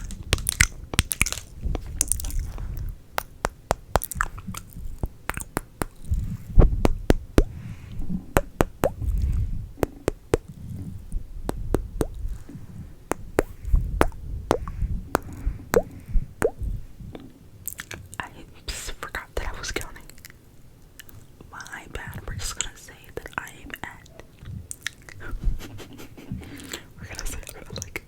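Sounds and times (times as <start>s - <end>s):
breath rumbling on microphone: 0.0s - 3.2s, 5.9s - 17.3s
wet mouth clicks and pops: 0.0s - 7.6s, 8.3s - 18.0s.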